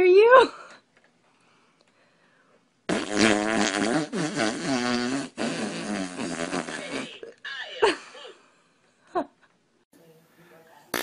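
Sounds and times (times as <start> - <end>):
loud pitched fart: 2.9 - 7.3.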